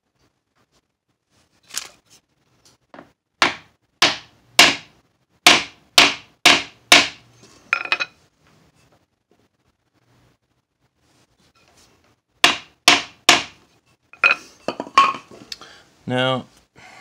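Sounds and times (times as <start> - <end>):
hammer tapping metal block: 5.5 - 7.2.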